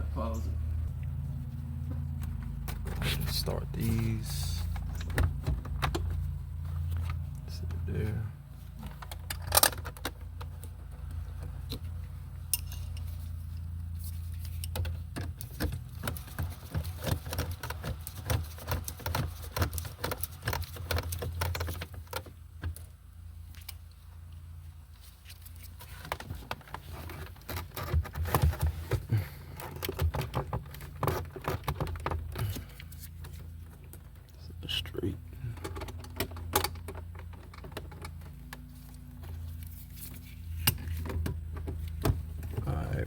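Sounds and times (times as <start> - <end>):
plastic trim clicking and rattling: 14.6 - 22.9.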